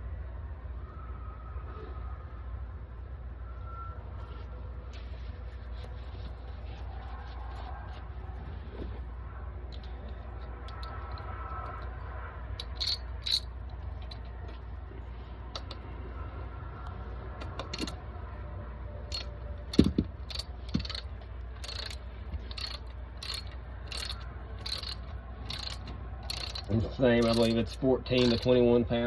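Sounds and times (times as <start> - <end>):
steady low hum: 0.0 - 29.0
metal clinks: 12.6 - 14.2, 19.1 - 28.6
socket ratchet clicking: 12.6 - 14.2, 17.6 - 18.0, 19.1 - 28.6.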